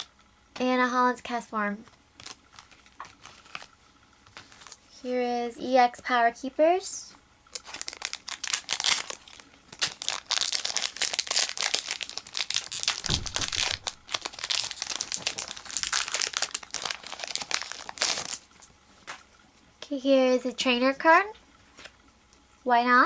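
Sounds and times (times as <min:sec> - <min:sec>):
foil pack crinkling: 0:02.2 - 0:04.9, 0:07.5 - 0:19.2
soft thump: 0:13.0 - 0:14.0.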